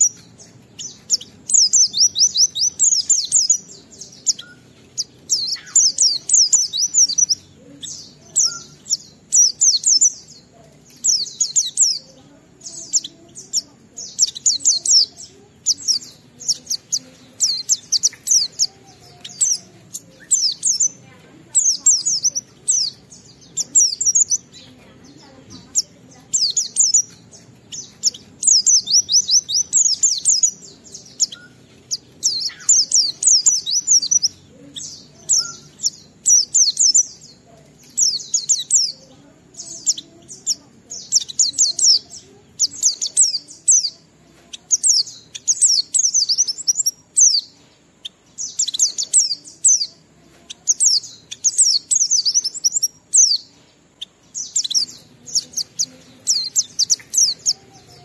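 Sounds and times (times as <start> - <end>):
bird singing rapid high notes: 0.0 - 44.0.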